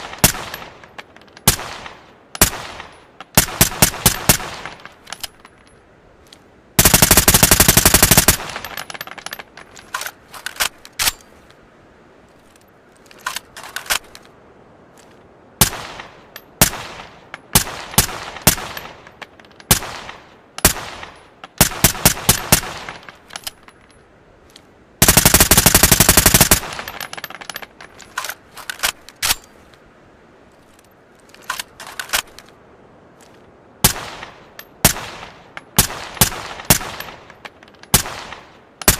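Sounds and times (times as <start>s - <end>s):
full-auto rifle bursts: 6.8s - 8.6s, 25.0s - 26.8s.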